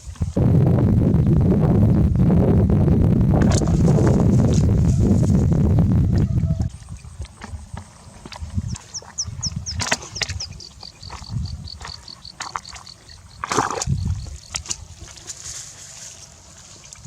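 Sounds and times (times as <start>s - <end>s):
water splashes: 7.0s - 17.0s.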